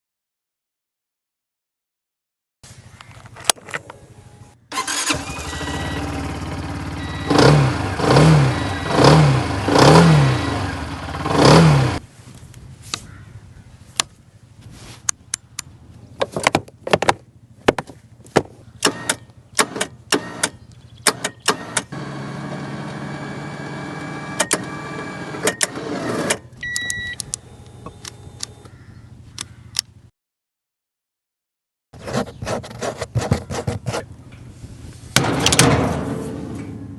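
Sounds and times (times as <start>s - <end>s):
atv engine starting and revving: 4.7s - 12.0s, 18.8s - 28.6s
sharp clicks and knocks: 35.2s - 36.8s.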